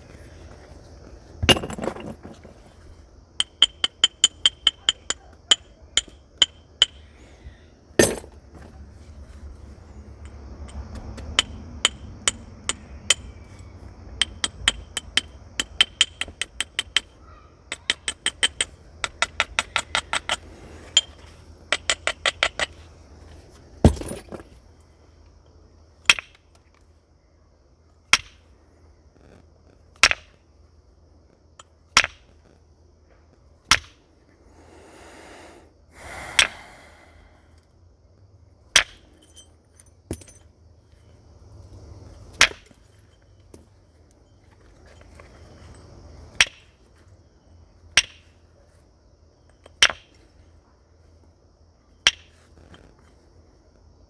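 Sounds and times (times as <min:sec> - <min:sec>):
light ringing taps on stone: 0:03.4 - 0:07.0
heavy strikes on flint: 0:08.0 - 0:08.7, 0:23.8 - 0:24.5, 0:36.2 - 0:37.0.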